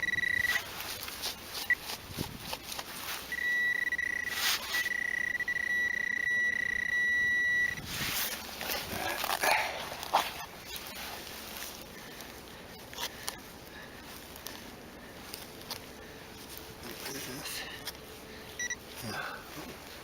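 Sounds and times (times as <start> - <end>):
metal detector high-pitched tone: 0.0 - 0.6, 3.3 - 7.9
rustling and scuffing: 0.1 - 3.5, 4.2 - 5.0, 7.8 - 20.0.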